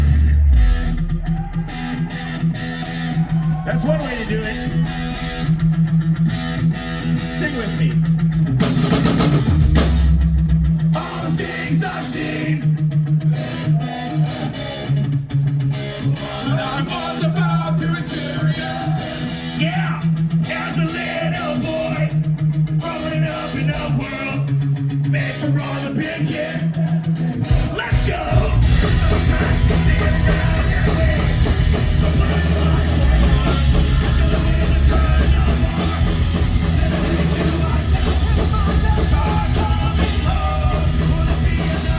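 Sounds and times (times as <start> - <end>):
drums: 0.0 - 41.9
guitar: 0.0 - 41.9
person singing: 25.2 - 41.9.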